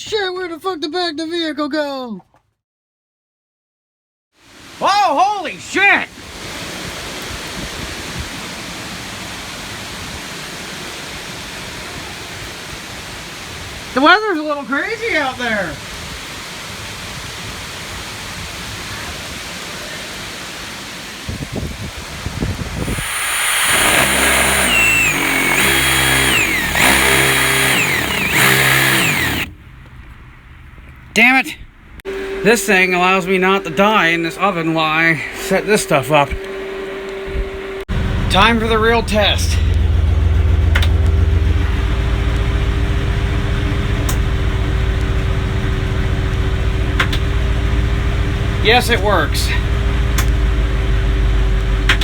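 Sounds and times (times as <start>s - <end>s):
heavy rain: 4.4s - 27.0s
van engine revving: 22.8s - 30.4s, 37.6s - 52.0s
high engine whine: 22.8s - 30.5s, 32.0s - 52.0s.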